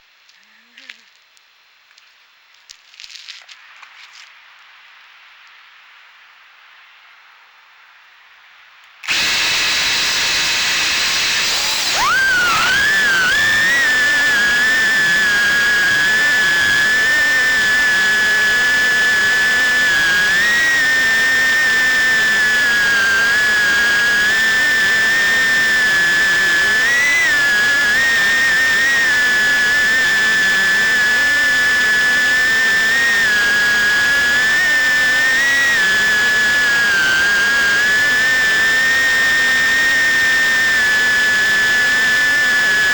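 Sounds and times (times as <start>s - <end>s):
drone motors whining: 9.0s - 42.9s.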